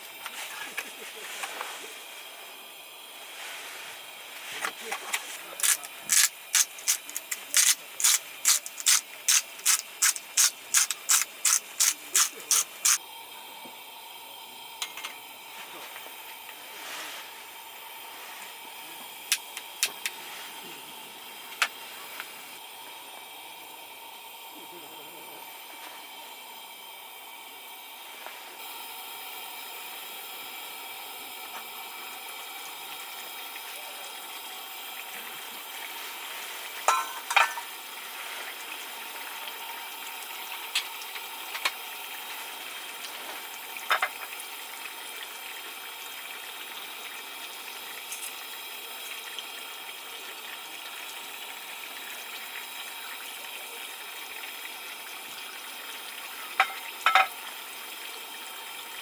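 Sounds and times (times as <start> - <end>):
food sizzling in a pan: 0.1 - 13.4, 25.7 - 54.8, 55.8 - 59.0
utensil clinking against pan: 36.9 - 37.7, 56.6 - 57.3.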